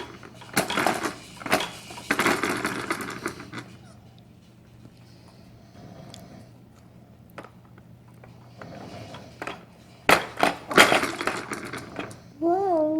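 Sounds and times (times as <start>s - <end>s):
baby toy clattering and knocking: 0.0s - 3.7s, 9.4s - 12.2s.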